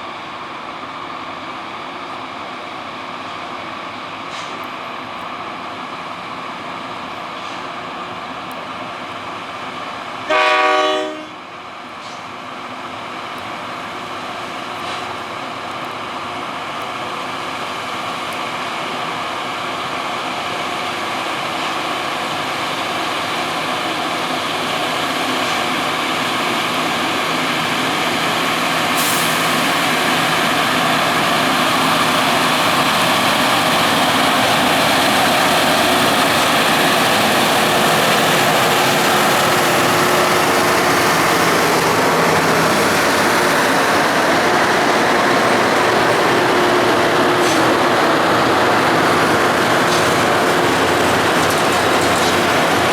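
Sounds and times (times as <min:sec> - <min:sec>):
train engines running: 0:00.0 - 0:52.9
train horn blast: 0:10.2 - 0:11.5.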